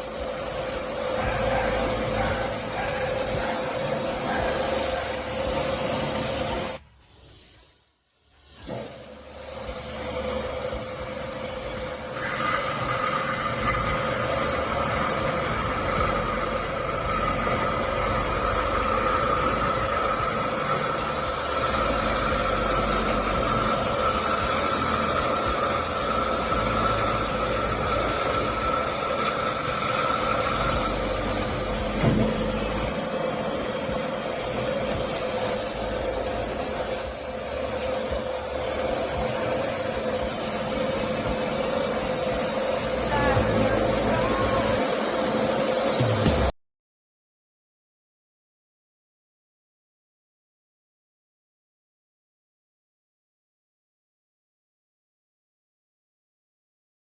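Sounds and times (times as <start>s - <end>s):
machine humming: 45.8s - 46.5s
high machine whine: 45.8s - 46.6s.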